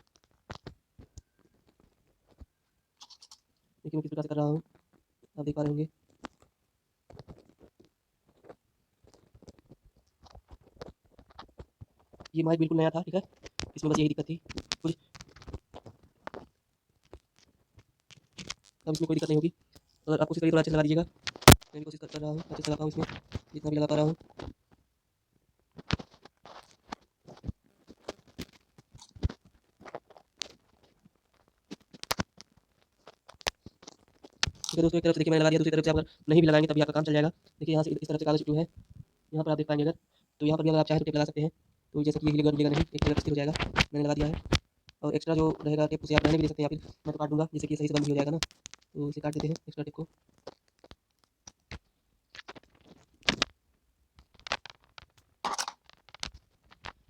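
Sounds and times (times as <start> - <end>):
adhesive tape clicks and scrapes: 13.3 - 20.0, 21.2 - 21.7, 25.8 - 34.9, 42.2 - 44.6
newspaper and tape crinkling: 25.7 - 35.2, 42.0 - 53.5, 54.2 - 57.0.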